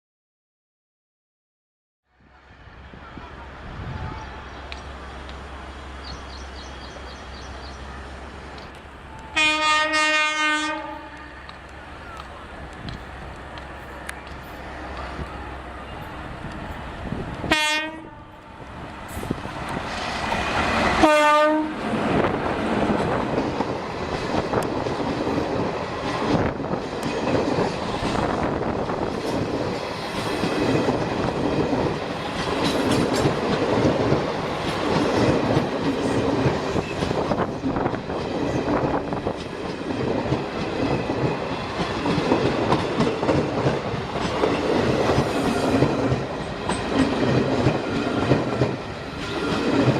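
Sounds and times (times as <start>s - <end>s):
passing train rumble: 2.1s - 49.9s
train horn blasts: 9.3s - 11.4s, 17.4s - 18.5s, 21.0s - 21.8s
wheels clacking over rail joints: 19.0s - 49.9s.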